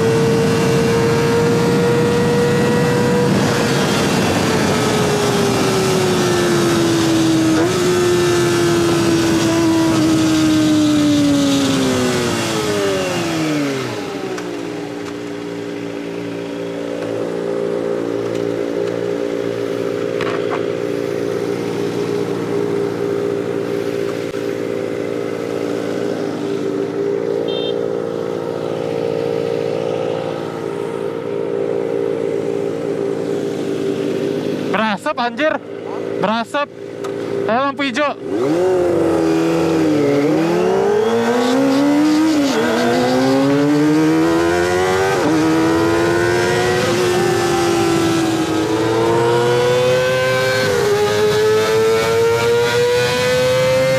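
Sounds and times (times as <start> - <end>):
wind rush: 0.0 - 8.2
motorcycle engine high-revving: 0.0 - 36.2, 36.8 - 53.9.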